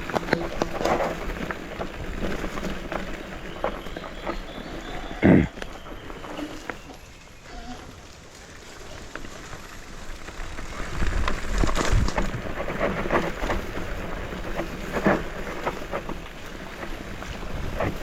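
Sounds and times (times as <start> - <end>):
bike rattling and knocking: 0.0 - 7.0, 8.4 - 18.0
bike tyres on dirt and rock: 0.0 - 18.0
wind on microphone: 10.6 - 18.0.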